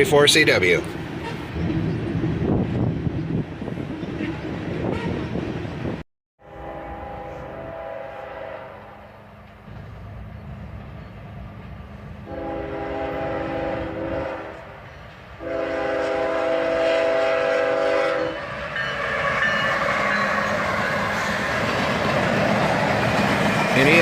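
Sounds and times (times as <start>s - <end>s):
locomotive engines and wheels rumbling: 0.0s - 24.0s
train horn blasts: 4.8s - 5.3s, 6.4s - 9.2s, 12.2s - 14.8s, 15.4s - 18.5s.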